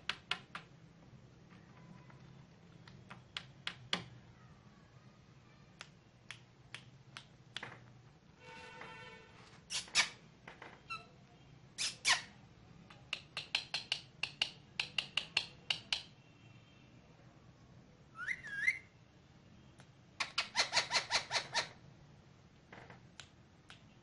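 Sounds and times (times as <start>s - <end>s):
parakeet chirping: 18.2s - 18.9s, 20.2s - 21.8s
parakeet wavering whistle: 18.2s - 18.9s.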